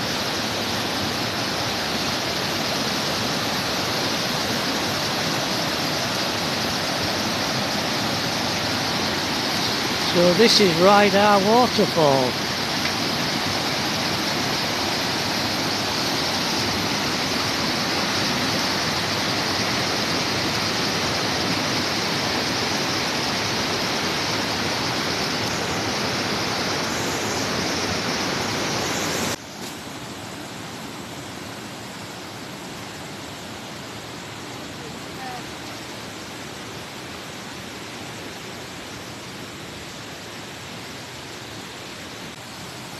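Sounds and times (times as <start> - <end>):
waterfall rushing: 0.0 - 29.4.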